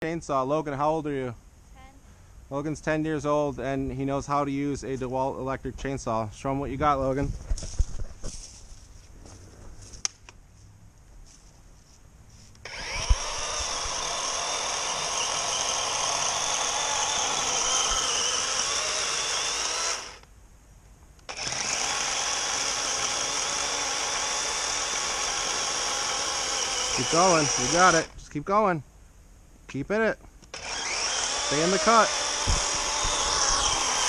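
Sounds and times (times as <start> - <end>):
electric chainsaw cutting wood: 12.6 - 20.3, 21.3 - 28.1, 30.5 - 34.0.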